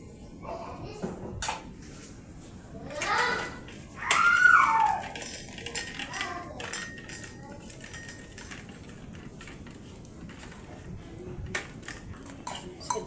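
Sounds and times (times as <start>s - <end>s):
kitchenware clinking on counter: 5.0s - 10.7s, 11.5s - 13.0s.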